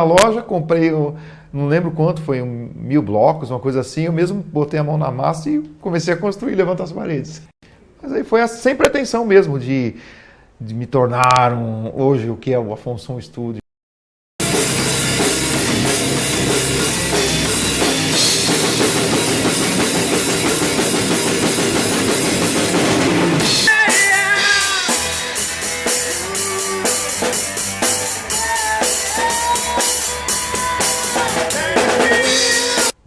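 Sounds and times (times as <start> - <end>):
guitar notes bending in pitch: 14.4 - 32.9
rock music on drums and guitar: 14.4 - 33.0.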